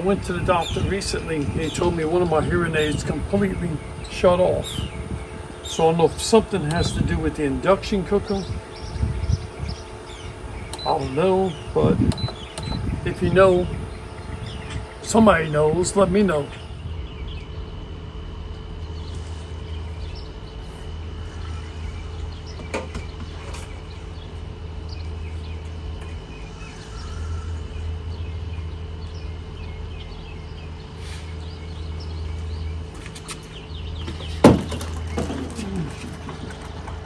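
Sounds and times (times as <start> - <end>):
steady low rumble: 0.0 - 37.0
faint bird chirps: 0.6 - 13.0, 24.9 - 32.9.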